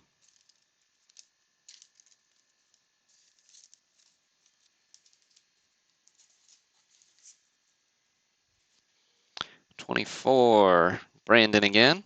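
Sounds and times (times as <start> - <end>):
cards clicking and rustling: 0.1 - 7.5.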